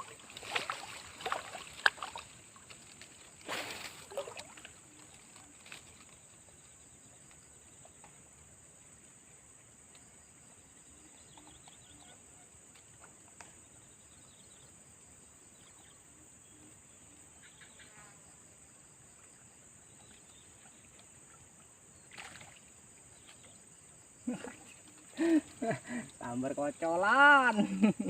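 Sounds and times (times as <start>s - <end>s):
high insect drone: 0.0s - 28.0s
insect chirps and trills: 0.0s - 28.0s.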